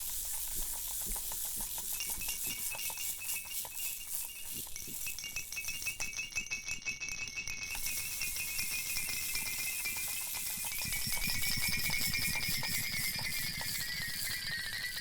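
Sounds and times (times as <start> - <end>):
fast rattling clicks: 0.0 - 5.9.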